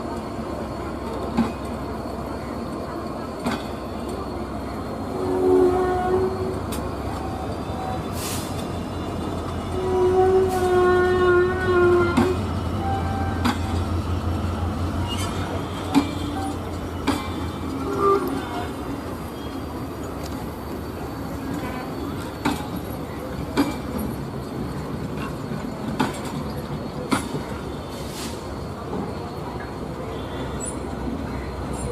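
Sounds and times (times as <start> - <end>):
train rumbling: 0.0 - 31.9
wheels clacking on rails: 0.0 - 31.9
train horn: 5.1 - 6.6, 9.7 - 13.6, 17.8 - 18.8.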